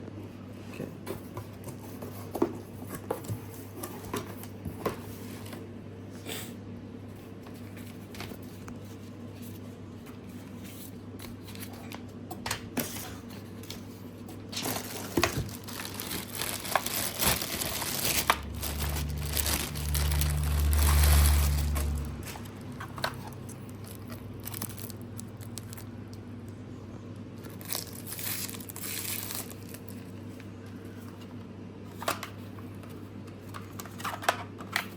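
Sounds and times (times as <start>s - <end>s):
cardboard rustling: 12.9s - 25.9s
plastic crinkling: 14.4s - 26.0s, 27.4s - 30.1s
low rumble: 18.4s - 22.7s.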